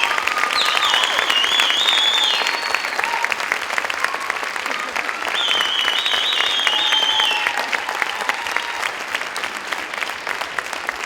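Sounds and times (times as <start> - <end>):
audience applauding: 0.0 - 11.0
high wavering whistle: 0.4 - 3.2, 5.4 - 7.5.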